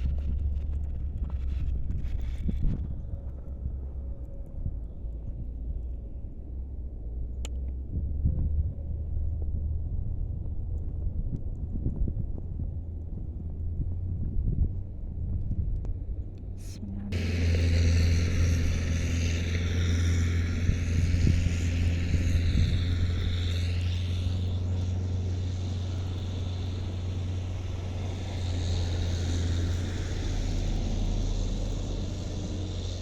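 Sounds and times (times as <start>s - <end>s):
engine running with low drone: 0.0s - 33.0s.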